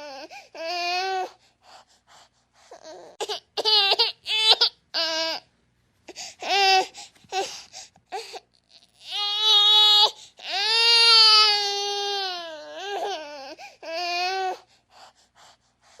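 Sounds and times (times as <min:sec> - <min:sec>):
baby whimpering: 0:02.7 - 0:05.4, 0:06.1 - 0:14.7
baby crying: 0:02.8 - 0:05.4, 0:06.4 - 0:14.6.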